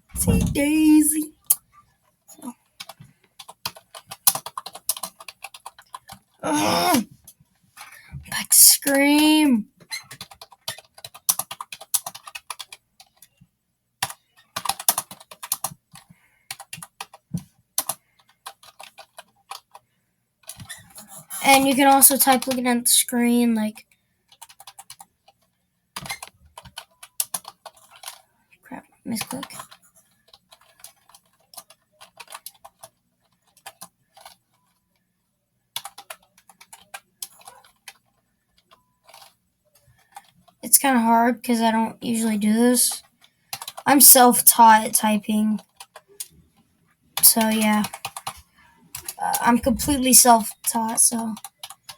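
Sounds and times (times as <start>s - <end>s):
keyboard typing clicks: 2.8s - 6.2s, 14.0s - 17.2s
computer keyboard typing: 2.8s - 7.0s, 7.8s - 13.4s, 14.0s - 19.8s, 23.8s - 28.2s, 29.1s - 34.8s, 35.7s - 39.4s, 40.0s - 40.6s, 42.2s - 46.3s, 47.2s - 51.9s.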